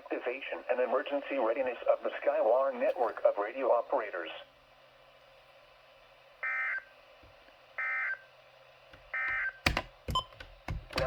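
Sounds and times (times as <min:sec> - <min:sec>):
sharp clicks and knocks: 0:08.9 - 0:11.0.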